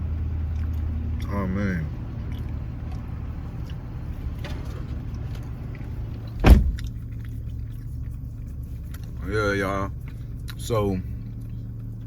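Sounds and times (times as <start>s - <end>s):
car engine idling: 0.0s - 12.0s
loud thump: 6.4s - 6.8s.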